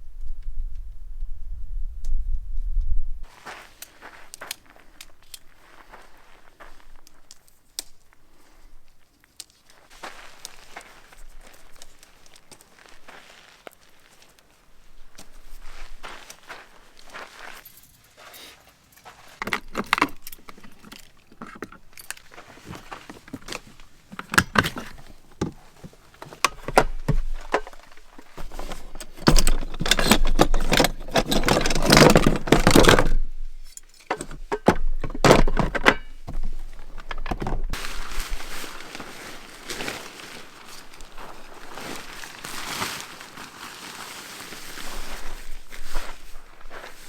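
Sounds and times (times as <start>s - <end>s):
loose metal items clinking: 17.4s - 43.8s, 44.4s - 47.0s.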